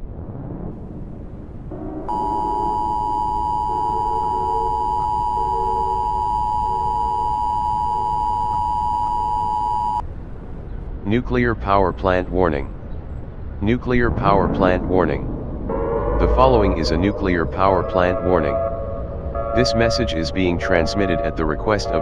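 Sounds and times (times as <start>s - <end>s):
two-tone alarm: 2.1s - 10.0s.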